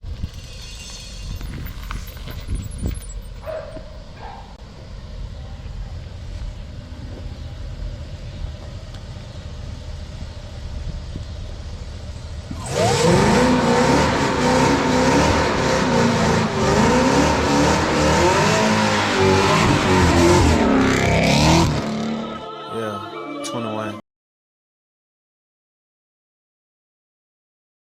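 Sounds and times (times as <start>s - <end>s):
car engine rumbling and revving: 0.8s - 22.4s.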